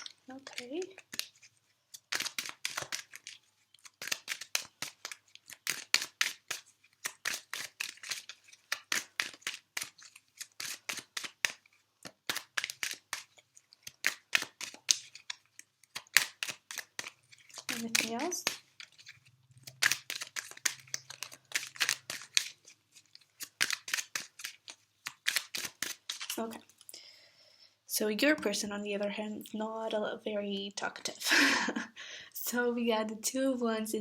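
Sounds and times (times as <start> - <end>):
cards being shuffled: 0.0 - 26.9.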